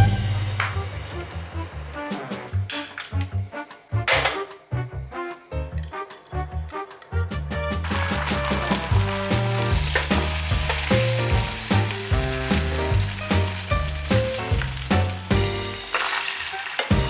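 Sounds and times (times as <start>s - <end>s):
music with pulsing bass: 0.0s - 2.7s, 7.3s - 15.8s
egg sizzling in a pan: 5.6s - 17.0s.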